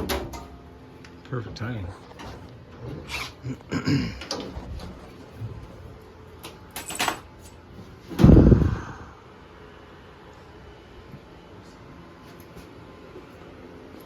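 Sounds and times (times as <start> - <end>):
heavy low thump: 8.2 - 8.8.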